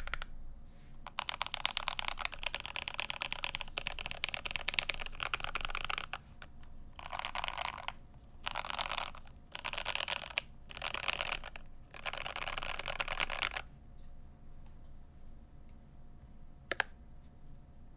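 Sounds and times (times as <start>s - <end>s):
mechanical keyboard typing: 0.0s - 0.3s, 1.1s - 6.2s, 7.0s - 13.6s.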